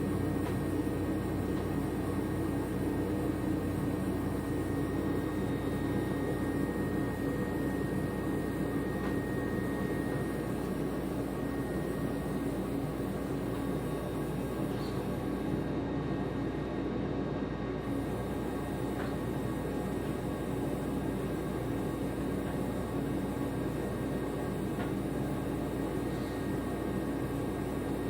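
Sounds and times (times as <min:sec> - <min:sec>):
faint high whine: 0:00.0 - 0:15.6
machine droning: 0:00.0 - 0:28.0.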